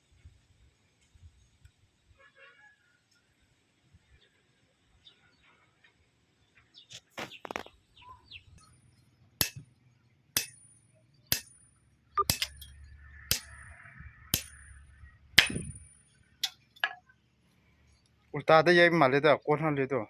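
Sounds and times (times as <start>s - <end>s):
hammer striking iron bar: 9.4s - 9.7s, 10.4s - 17.0s
light metallic clanks: 10.4s - 14.8s, 15.4s - 17.2s.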